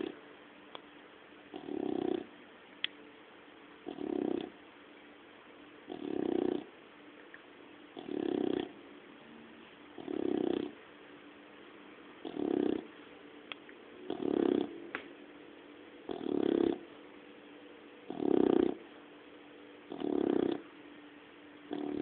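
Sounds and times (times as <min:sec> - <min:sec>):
puppy snoring: 0:00.0 - 0:00.2, 0:01.5 - 0:02.3, 0:03.8 - 0:04.6, 0:05.8 - 0:06.7, 0:08.0 - 0:08.8, 0:09.9 - 0:10.8, 0:12.2 - 0:12.9, 0:14.0 - 0:15.0, 0:16.0 - 0:16.9, 0:18.0 - 0:18.9, 0:19.8 - 0:20.8, 0:21.7 - 0:22.0.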